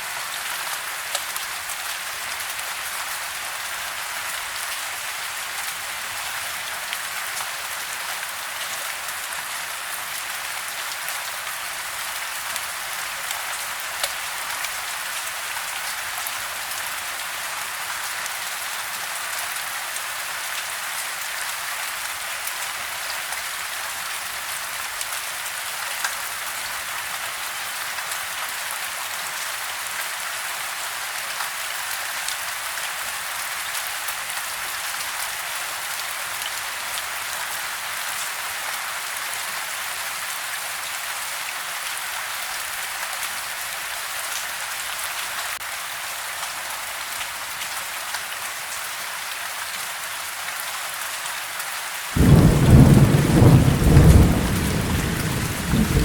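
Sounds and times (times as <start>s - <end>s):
soft rain patter on house: 0.0s - 56.0s
thunderclap: 52.2s - 56.0s.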